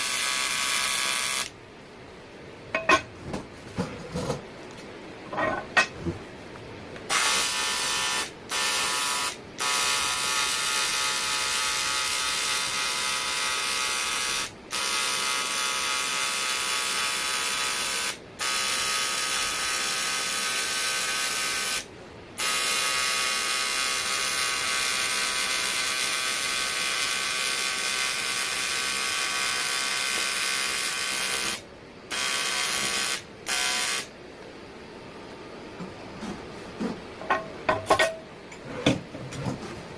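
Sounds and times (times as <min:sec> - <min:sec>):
welding arc buzzing hiss: 0:00.0 - 0:01.6, 0:07.1 - 0:34.2.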